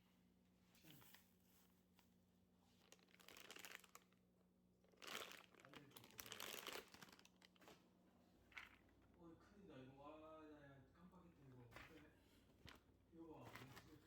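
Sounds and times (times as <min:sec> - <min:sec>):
material crinkling and rustling: 0:00.8 - 0:04.3, 0:04.9 - 0:09.2, 0:11.4 - 0:14.0.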